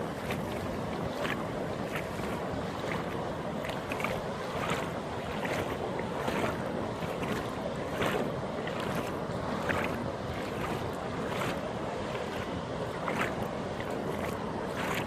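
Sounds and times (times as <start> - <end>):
sea waves breaking: 0.0 - 15.0
water splashes: 0.0 - 15.0.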